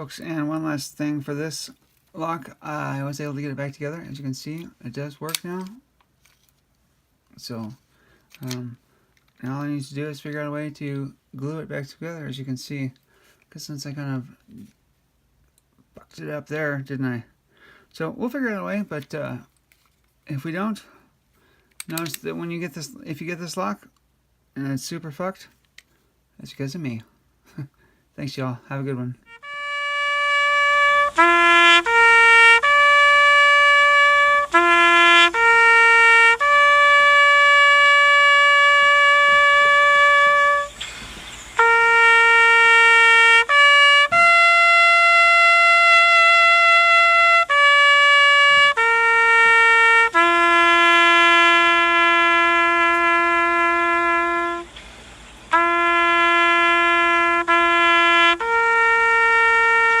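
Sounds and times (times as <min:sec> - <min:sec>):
slow brass melody: 0:29.2 - 1:00.0.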